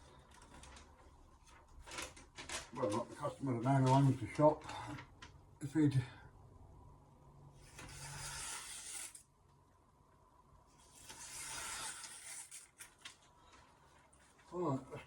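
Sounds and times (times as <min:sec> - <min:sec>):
knife scraping on whetstone: 0:07.8 - 0:09.2, 0:11.0 - 0:12.7.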